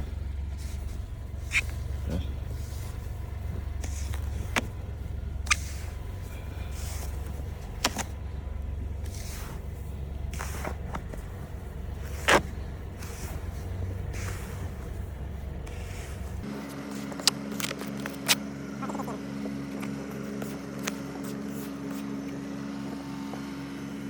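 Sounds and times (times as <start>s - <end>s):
car engine idling: 0.0s - 16.5s
snow scraper scraping car: 0.0s - 18.4s.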